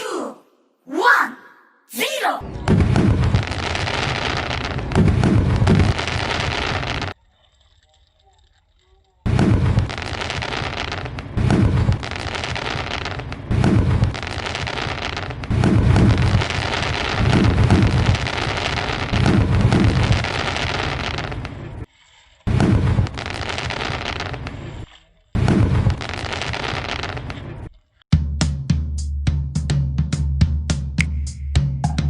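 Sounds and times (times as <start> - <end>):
fireworks crackling: 2.0 - 28.0
fireworks booming: 2.4 - 7.2, 9.2 - 21.9, 22.5 - 27.7.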